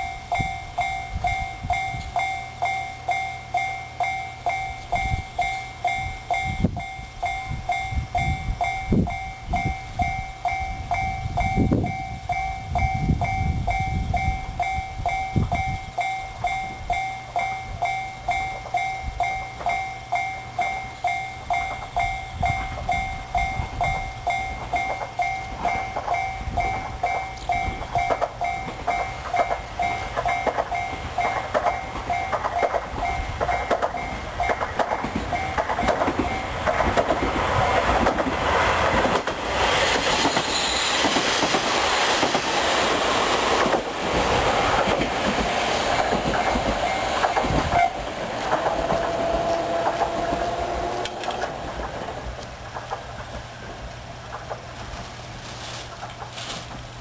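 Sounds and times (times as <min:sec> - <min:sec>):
level crossing bell ringing: 0:00.0 - 0:37.0, 0:46.7 - 0:48.0
train wheels clacking over rails: 0:20.6 - 0:55.2.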